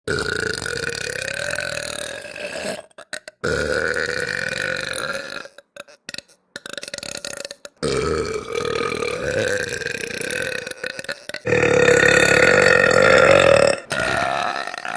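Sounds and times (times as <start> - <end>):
girl burping: 5.2 - 14.9.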